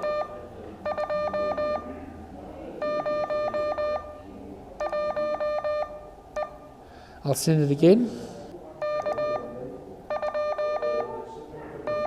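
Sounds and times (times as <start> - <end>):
morse code tone: 0.0 - 1.9, 2.8 - 4.2, 4.8 - 6.6, 8.8 - 11.2.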